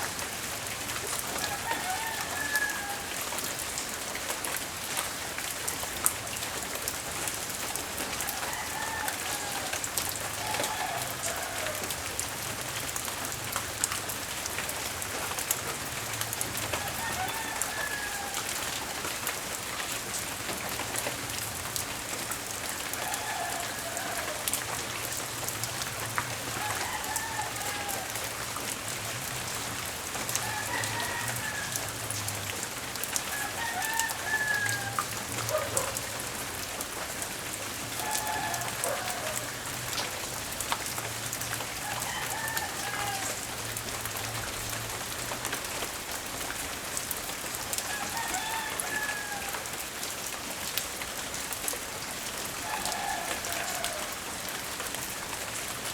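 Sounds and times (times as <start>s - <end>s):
rain pattering: 0.0s - 55.9s
rooster crowing: 1.3s - 3.5s, 8.0s - 12.2s, 16.7s - 19.0s, 22.8s - 25.2s, 26.1s - 28.7s, 30.2s - 36.7s, 37.8s - 40.1s, 41.3s - 43.8s, 47.7s - 49.9s, 52.5s - 54.8s.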